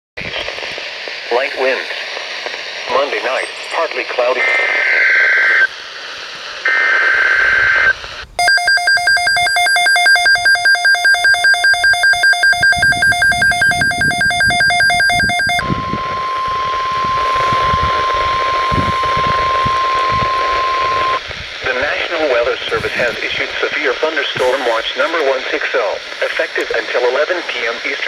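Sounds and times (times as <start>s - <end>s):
rapid electronic alarm beeps: 6.7s - 21.2s.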